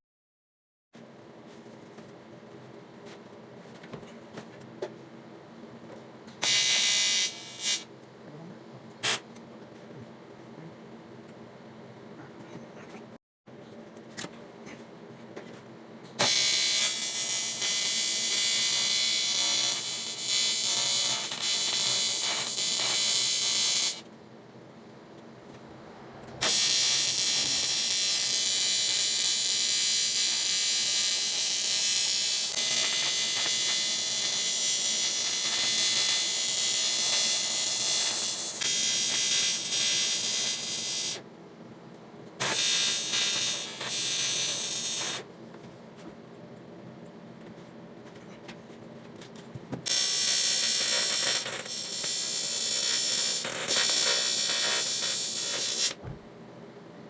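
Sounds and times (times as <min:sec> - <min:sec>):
electric welding arc buzzing: 0:06.4 - 0:07.9, 0:16.2 - 0:24.0, 0:26.4 - 0:41.2, 0:42.4 - 0:45.3, 0:49.9 - 0:56.0.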